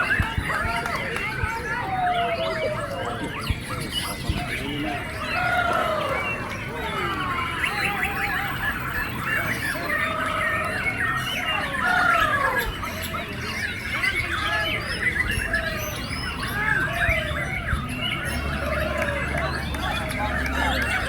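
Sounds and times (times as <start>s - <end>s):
songbirds singing: 0.0s - 21.0s.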